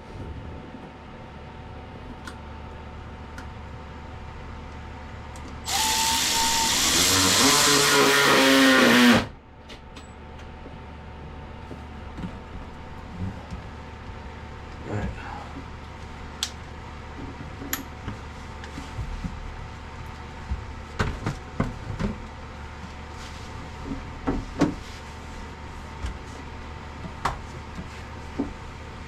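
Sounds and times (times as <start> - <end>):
steady low hum: 0.0 - 5.8, 9.2 - 29.0
power drill running: 5.7 - 9.3.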